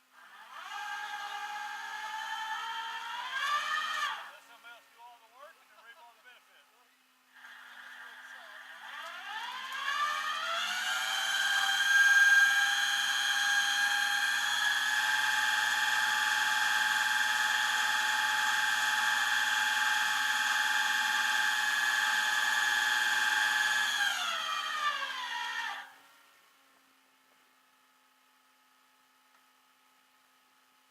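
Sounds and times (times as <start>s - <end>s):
small motor whining: 0.2s - 4.3s, 7.4s - 26.4s
faint low hum: 4.2s - 9.2s, 25.9s - 30.9s.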